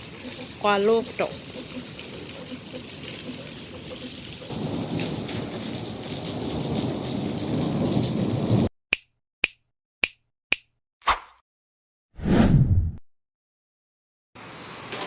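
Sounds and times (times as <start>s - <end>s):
heavy rain pouring: 0.0s - 8.7s.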